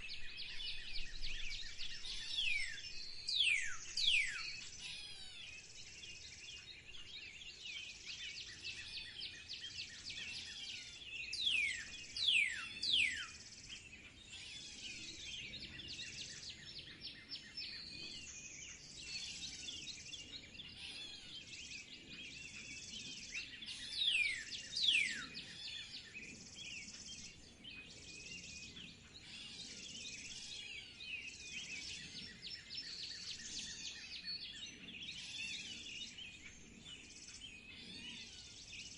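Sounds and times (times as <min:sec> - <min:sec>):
birds chirping in chorus: 0:00.0 - 0:38.9.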